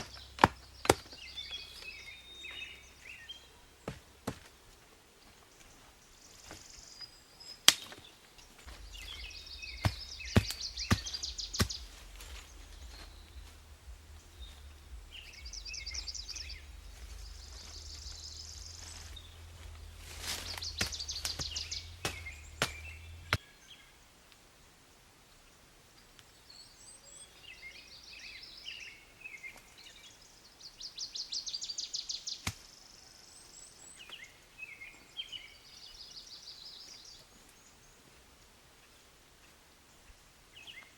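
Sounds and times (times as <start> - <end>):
small birds trilling: 0.0 - 24.0
sharp knocks: 8.7 - 17.7
low rumble: 8.7 - 23.4.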